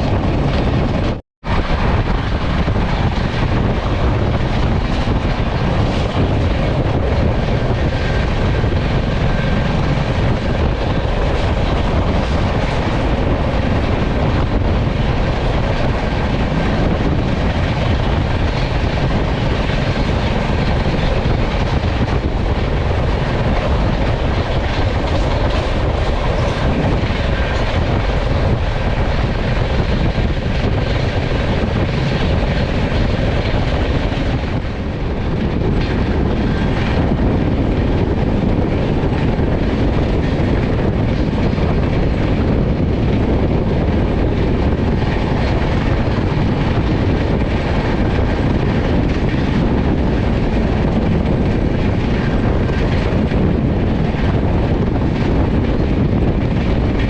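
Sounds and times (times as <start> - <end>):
train wheels rumbling on track: 0.0 - 57.0.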